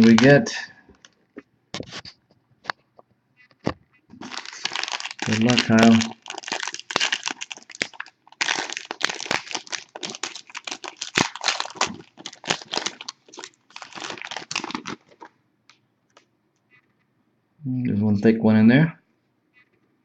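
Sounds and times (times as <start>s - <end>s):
wrapper crinkling and tearing: 0.0s - 0.4s, 4.2s - 15.3s.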